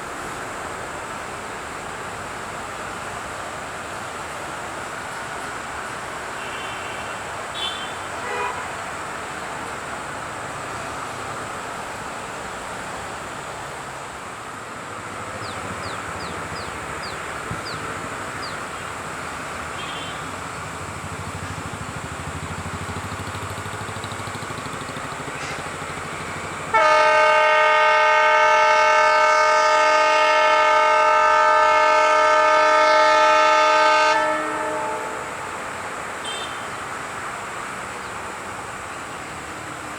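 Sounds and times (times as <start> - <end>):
locomotive horn blast: 6.3 - 8.8, 19.7 - 20.4, 26.7 - 36.8.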